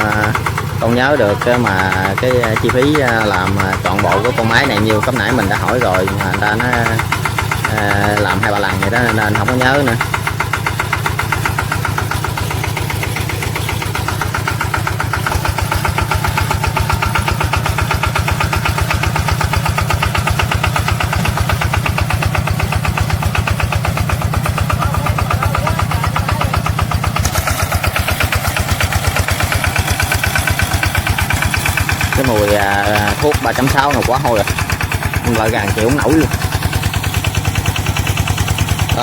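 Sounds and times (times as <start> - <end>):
engine chugging: 0.0 - 39.0.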